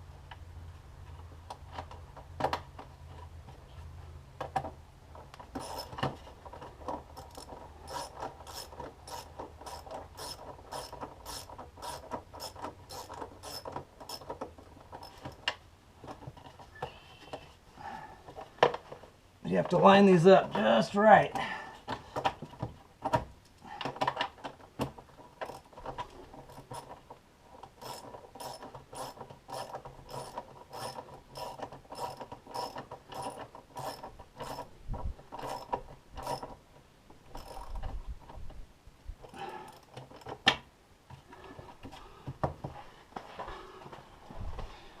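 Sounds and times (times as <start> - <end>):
ratchet wrench clicking: 5.6 - 6.0, 7.2 - 14.4, 27.8 - 34.7, 37.4 - 37.8.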